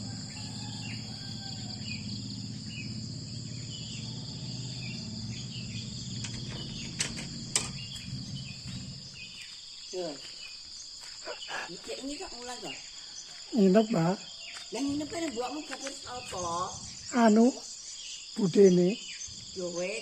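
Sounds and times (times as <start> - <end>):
low pulsing hum: 0.0 - 9.5
crickets chirring: 0.0 - 20.0.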